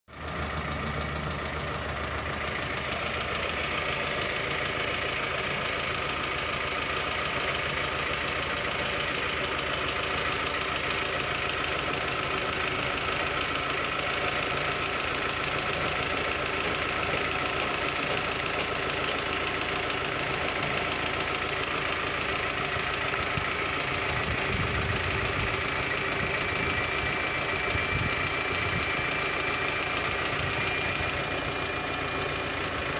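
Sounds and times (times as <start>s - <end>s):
car engine running: 0.1s - 32.9s
high-pitched whistle: 0.1s - 32.9s.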